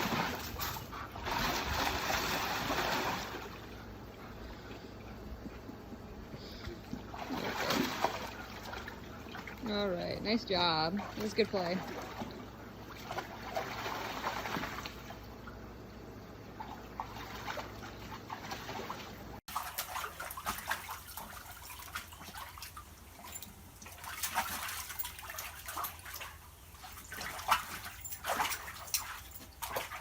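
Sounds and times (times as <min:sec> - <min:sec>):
dog splashing water: 0:00.0 - 0:05.4, 0:06.4 - 0:15.6, 0:16.4 - 0:30.0.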